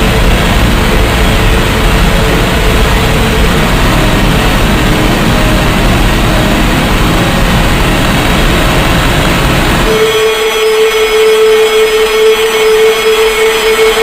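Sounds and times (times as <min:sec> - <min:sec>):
harsh electronic noise music: 0:00.0 - 0:14.0.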